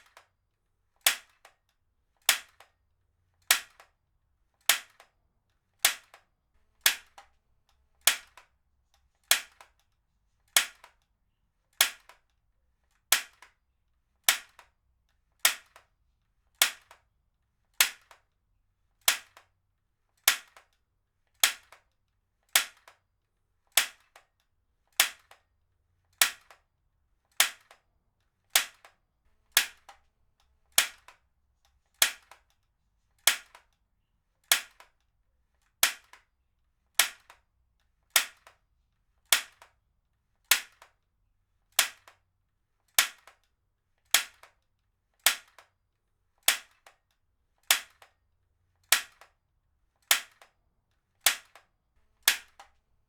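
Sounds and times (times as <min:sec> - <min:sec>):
stapler firing snaps: 0:28.5 - 0:30.1, 0:30.7 - 0:31.2, 0:32.0 - 0:32.6, 0:41.8 - 0:42.2, 0:43.0 - 0:43.4, 0:44.1 - 0:44.6, 0:46.5 - 0:47.0, 0:47.6 - 0:48.1, 0:48.9 - 0:49.3, 0:50.1 - 0:50.5, 0:51.2 - 0:52.7.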